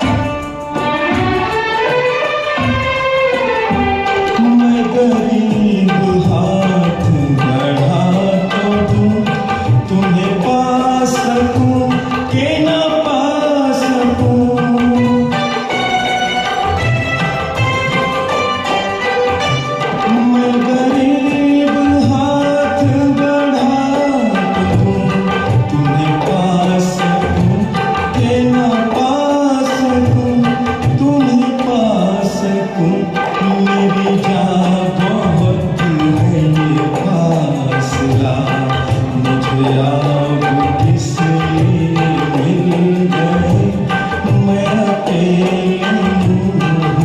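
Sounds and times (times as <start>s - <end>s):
gliding melody line: 0.0s - 47.0s
tabla rhythm: 0.0s - 47.0s.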